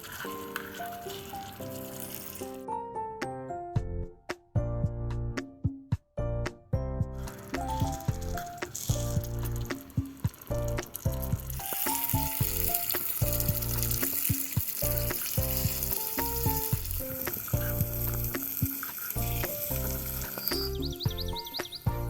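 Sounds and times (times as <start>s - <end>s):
food sizzling in small pot: 0.0s - 2.7s, 7.2s - 22.0s
background music repeating melody: 0.2s - 22.0s.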